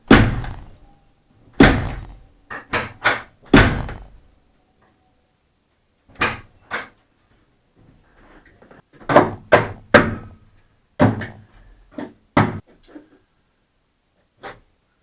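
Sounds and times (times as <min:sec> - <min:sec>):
sharp knocks and thuds: 0:00.0 - 0:00.8, 0:01.6 - 0:04.2, 0:08.9 - 0:10.4, 0:11.0 - 0:12.6.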